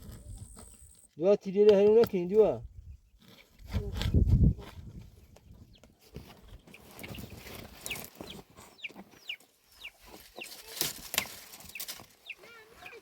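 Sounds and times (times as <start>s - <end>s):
chickens clucking and peeping: 5.0s - 13.0s.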